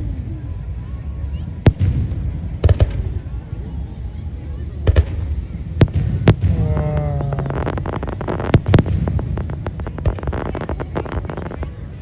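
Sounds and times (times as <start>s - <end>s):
fireworks crackling: 0.0s - 12.0s
fireworks bangs: 1.5s - 3.5s, 4.8s - 12.0s.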